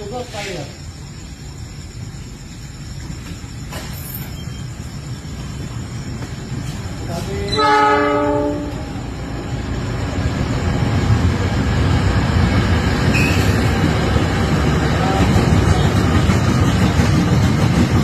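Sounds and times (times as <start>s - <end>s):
train rumble: 0.0s - 18.0s
locomotive horn chord: 7.5s - 8.8s.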